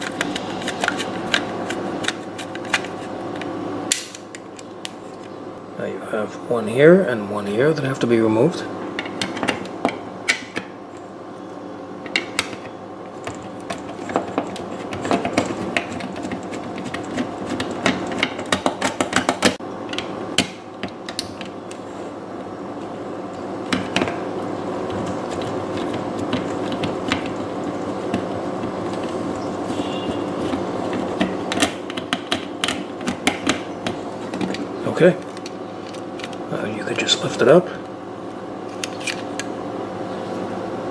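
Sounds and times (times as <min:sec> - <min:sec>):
steady hum: 0:00.0 - 0:40.9.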